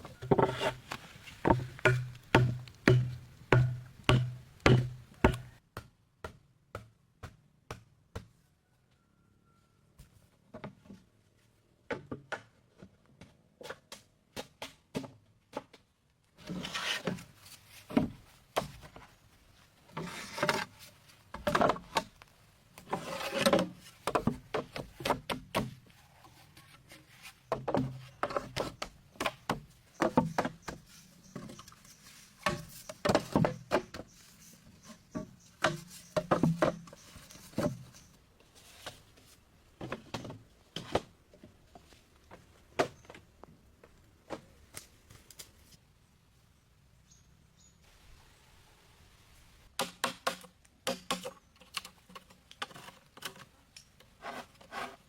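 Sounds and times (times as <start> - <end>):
scraping and rubbing bamboo: 0.0 - 5.6, 16.4 - 41.2, 49.7 - 55.0
hollow knocks on bamboo: 0.2 - 8.3.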